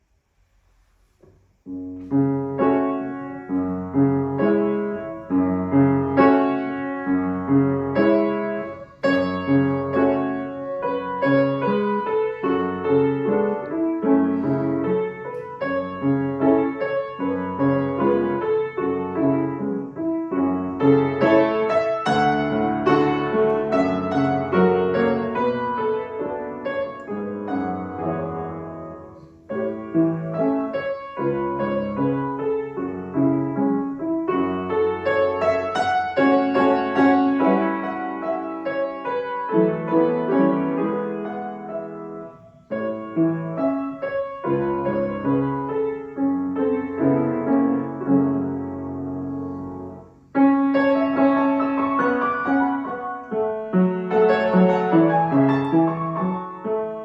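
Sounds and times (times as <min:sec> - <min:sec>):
slow lyrical piano melody: 0:00.0 - 0:57.0.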